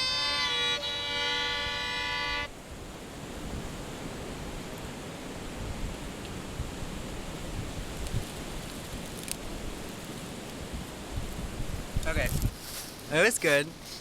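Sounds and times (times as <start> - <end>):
held musical chord: 0.0 - 2.5
wind on microphone: 0.0 - 13.0.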